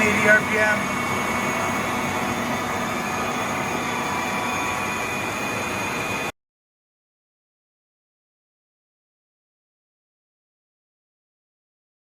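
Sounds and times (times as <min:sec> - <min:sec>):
drive whining tones: 0:00.0 - 0:06.3
milling machine hum: 0:00.0 - 0:06.3.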